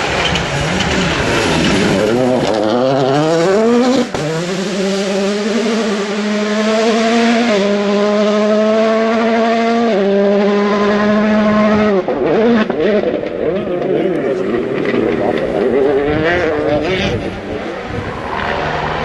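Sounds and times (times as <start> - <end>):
rally car engine revving: 0.0 - 19.0
exhaust cracks: 12.0 - 19.0.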